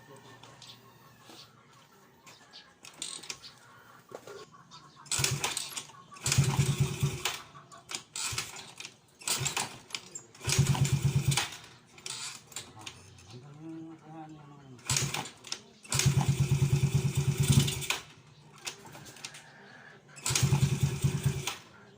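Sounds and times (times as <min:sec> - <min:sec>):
scooter engine cranking: 0:05.0 - 0:13.5, 0:14.8 - 0:19.5, 0:20.2 - 0:21.9.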